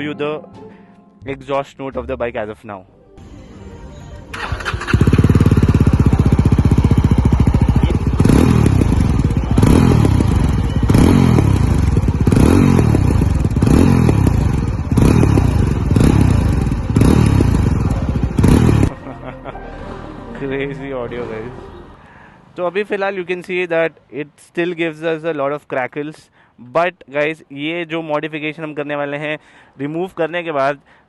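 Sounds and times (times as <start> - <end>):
exhaust crackles: 4.3 - 19.0
motorcycle engine idling and revving: 4.3 - 19.0.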